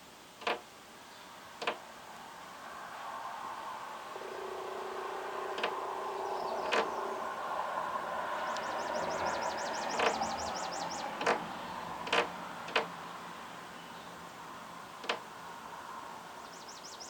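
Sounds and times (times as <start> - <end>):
bird pecking on window glass: 0.4 - 0.6, 11.2 - 12.9.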